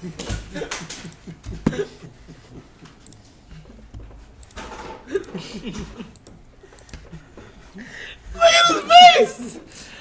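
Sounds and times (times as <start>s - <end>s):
laughter: 0.0s - 3.8s, 5.0s - 6.2s.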